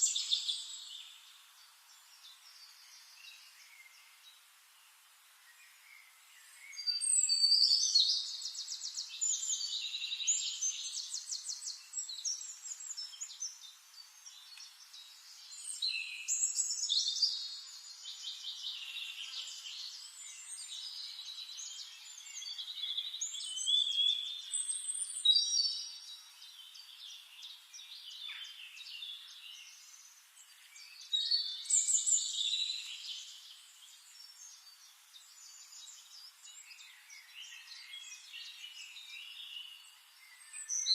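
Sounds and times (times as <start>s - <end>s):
songbird singing trills and warbles: 0.0s - 40.9s.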